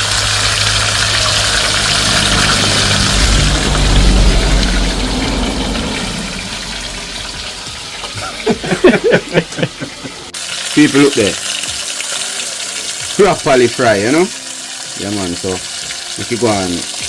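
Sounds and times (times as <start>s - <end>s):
fish sizzling in hot oil: 0.0s - 17.0s
low droning hum: 0.2s - 8.3s.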